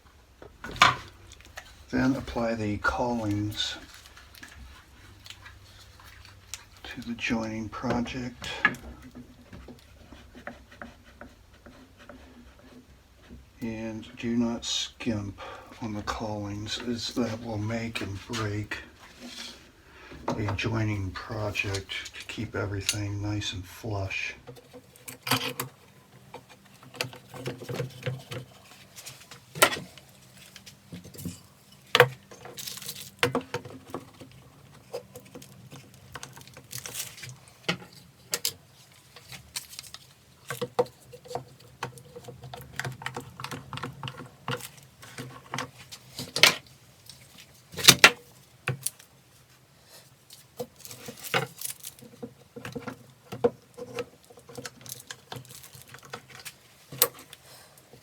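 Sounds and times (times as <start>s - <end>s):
faint steady hum: 0.0s - 58.0s
clamps clicking and knocking: 24.5s - 28.6s.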